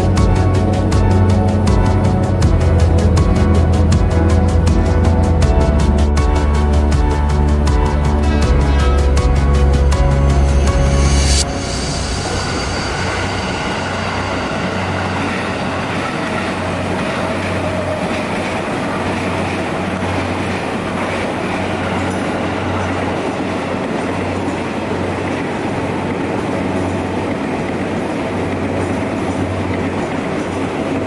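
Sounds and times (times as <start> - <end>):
train rumbling on rails: 0.0 - 31.0
faint high whine: 10.8 - 17.6.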